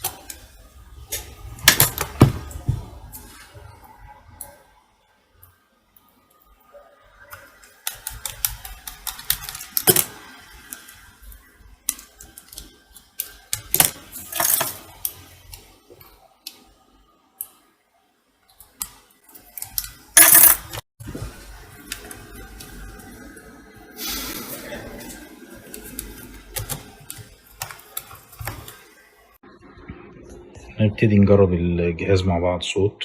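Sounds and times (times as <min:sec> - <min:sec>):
small parts and tools clattering: 0:12.2 - 0:15.2, 0:18.7 - 0:20.8.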